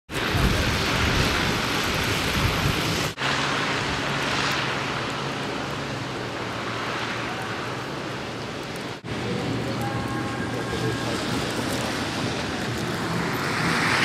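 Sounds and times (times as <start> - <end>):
wind buffeting microphone: 0.1 - 3.2
storm wind rushing: 0.1 - 5.0.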